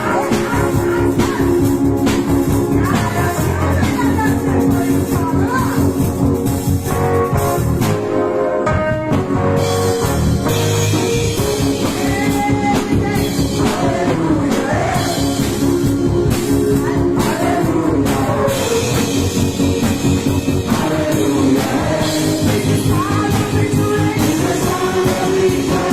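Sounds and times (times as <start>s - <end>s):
rock drums: 0.0s - 25.9s
rock guitar: 0.0s - 25.9s
person singing: 10.9s - 15.6s, 16.7s - 25.9s.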